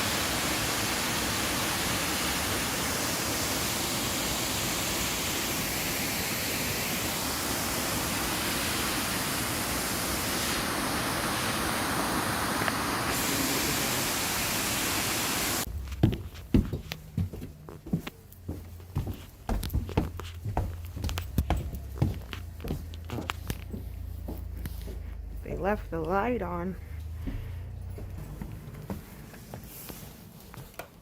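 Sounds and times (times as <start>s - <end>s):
waterfall rushing: 0.0s - 15.7s
footsteps: 15.6s - 31.0s.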